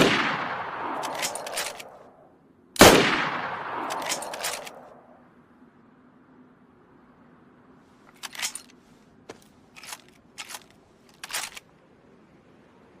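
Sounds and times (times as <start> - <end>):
rifle bolt metallic clacks: 1.0 - 2.0, 3.8 - 4.8, 8.1 - 11.6.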